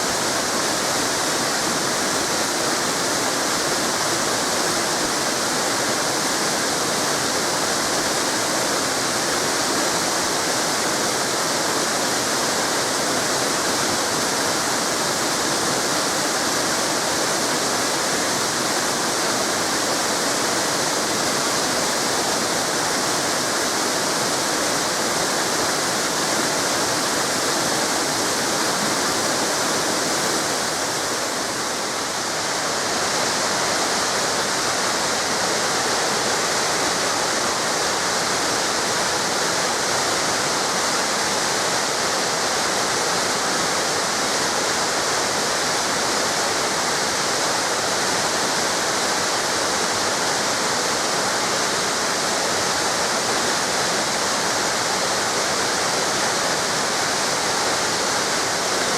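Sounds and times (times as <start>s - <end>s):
river water cascading: 0.0s - 58.9s.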